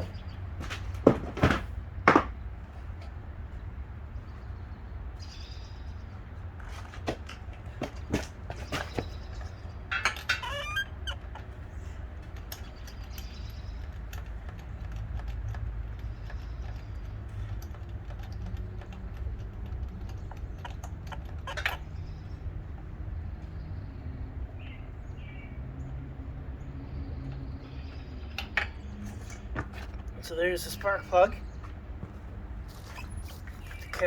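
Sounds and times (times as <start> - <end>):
low rumble with faint ticks: 12.2 - 23.6.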